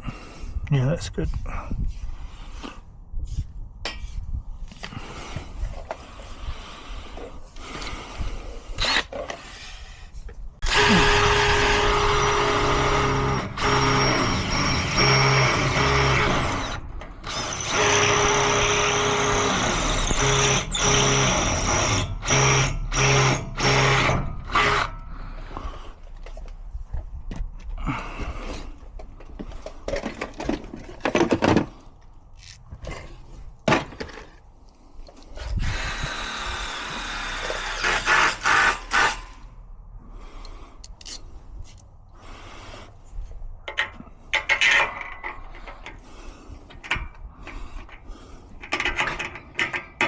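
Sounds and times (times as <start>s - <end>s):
power drill whining: 8.8s - 9.9s, 10.6s - 25.8s, 35.4s - 39.4s.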